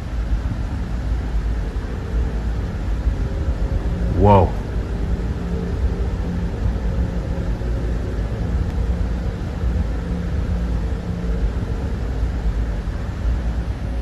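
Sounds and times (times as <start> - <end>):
faint hum: 0.0 - 14.0
low rumbling noise: 0.0 - 14.0.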